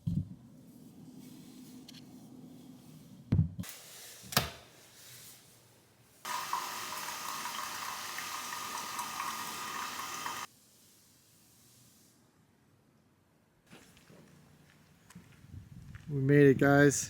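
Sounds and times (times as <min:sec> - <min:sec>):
running water: 0:06.3 - 0:10.5.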